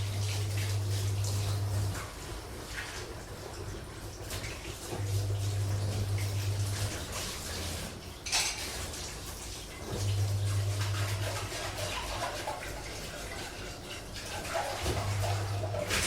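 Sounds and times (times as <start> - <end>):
washing machine hum: 0.0 - 16.0
water running and splashing: 0.0 - 16.0
dishes and cutlery clattering: 8.2 - 9.0.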